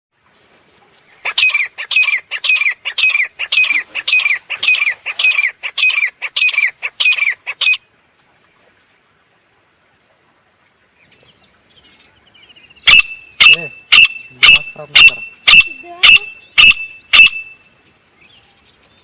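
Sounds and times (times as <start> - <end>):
bird calling harsh shrill notes: 1.3 - 7.8, 12.8 - 17.8.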